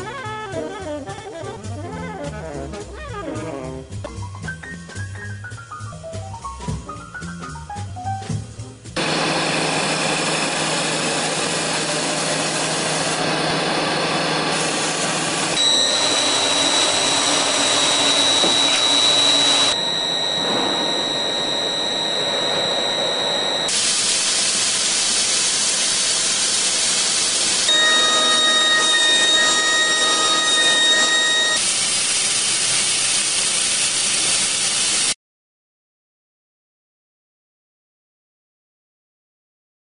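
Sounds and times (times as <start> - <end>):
deburring machine running: 9.0 - 35.2
high machine whine: 9.0 - 35.2.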